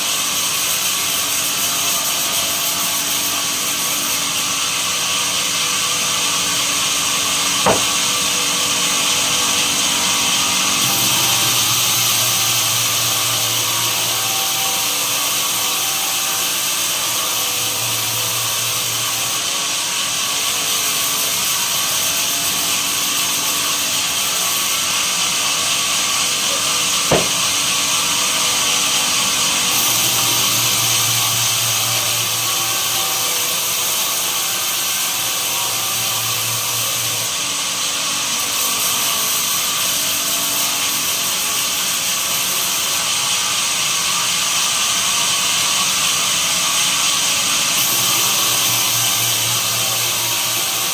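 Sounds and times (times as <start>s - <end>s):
sawmill saw running: 0.0s - 50.9s
sharp knocks: 7.7s - 8.1s, 27.1s - 27.5s.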